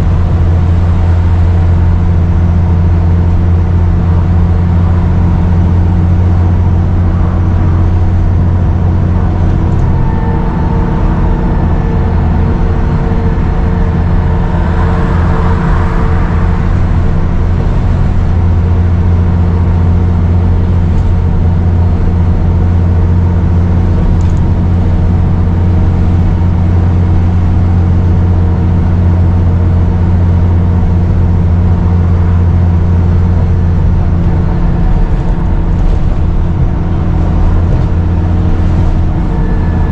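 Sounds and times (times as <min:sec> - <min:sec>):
bus diesel engine drone: 0:00.0 - 0:39.9
turbo whistle: 0:39.2 - 0:39.9.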